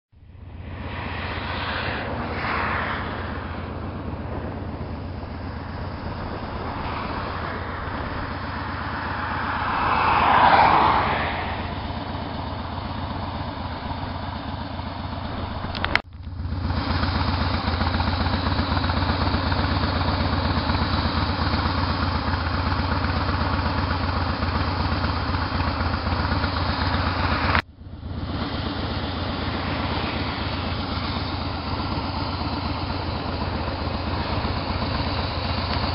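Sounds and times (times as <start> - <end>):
passing whoosh: 0.2 - 15.8, 28.7 - 35.8
motorcycle engine idling: 3.1 - 9.7, 11.5 - 35.9.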